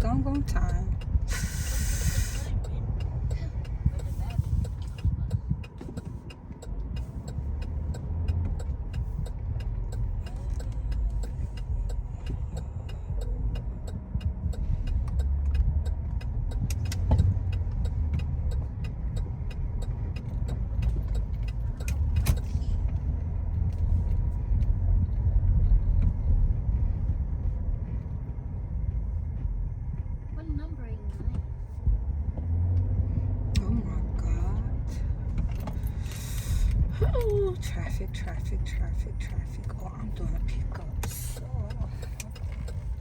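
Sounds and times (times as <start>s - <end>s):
light ticking: 0.0s - 25.3s, 33.5s - 43.0s
car engine and road rumble: 0.0s - 43.0s.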